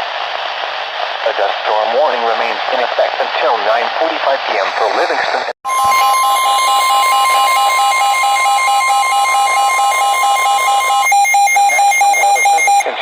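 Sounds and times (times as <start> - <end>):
fast pulsing alarm beep: 5.7 - 12.9
steady warning alarm tone: 5.7 - 12.9.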